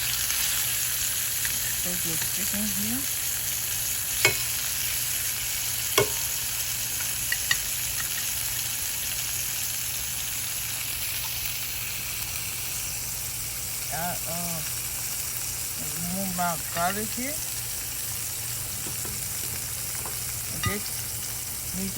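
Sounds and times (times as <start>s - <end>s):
chicken sizzling in a pan: 0.0s - 21.9s
sharp knocks against pan: 4.2s - 4.5s, 6.0s - 6.4s.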